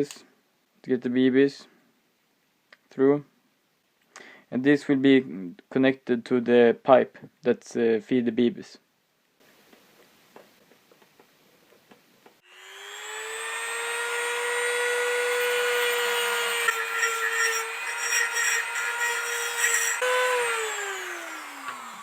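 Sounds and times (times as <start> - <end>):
rotary tool whining and grinding: 12.4 - 22.0.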